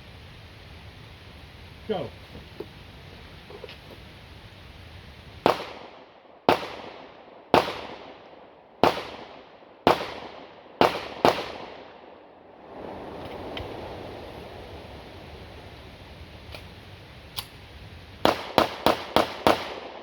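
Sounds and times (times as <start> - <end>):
pistol shots: 5.4 - 12.1, 18.2 - 20.0.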